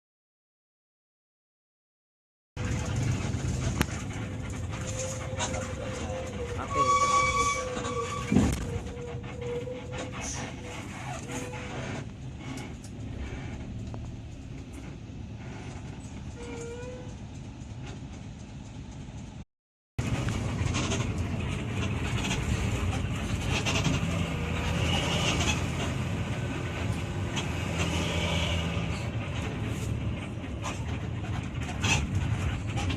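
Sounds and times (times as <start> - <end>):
bus engine in traffic: 2.6 - 19.4, 20.0 - 32.9
vehicle horn: 6.6 - 8.5.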